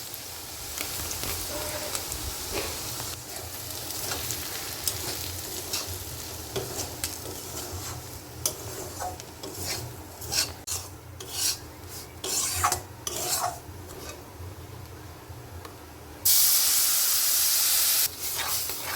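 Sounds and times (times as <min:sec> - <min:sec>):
food sizzling: 0:00.0 - 0:13.6, 0:16.3 - 0:18.9
spatula scraping a frying pan: 0:01.5 - 0:14.2, 0:18.1 - 0:18.9.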